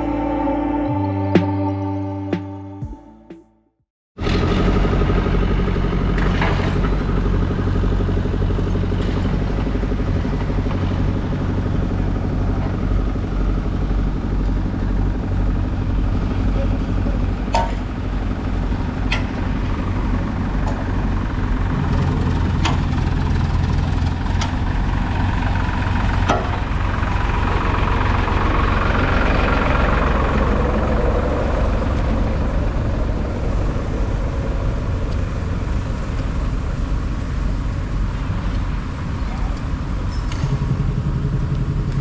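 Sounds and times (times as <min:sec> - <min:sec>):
vehicle engine rumbling: 0:00.0 - 0:03.3, 0:04.2 - 0:42.0
vehicle passing: 0:26.8 - 0:40.0.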